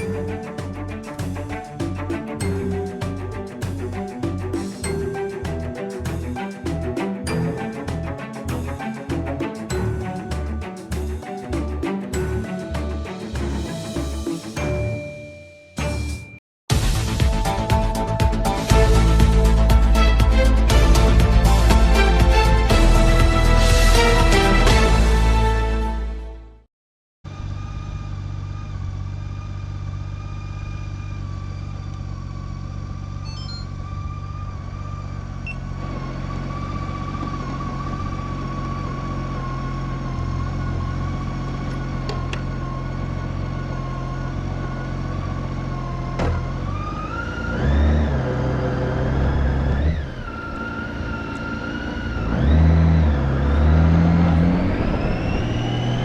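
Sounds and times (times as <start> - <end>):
road noise: 0.0 - 15.2, 27.3 - 56.0
motorcycle engine running: 27.3 - 56.0.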